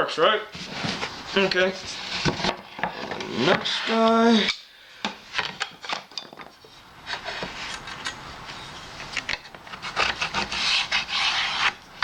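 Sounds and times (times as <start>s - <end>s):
scraping on plywood: 9.7s - 11.8s.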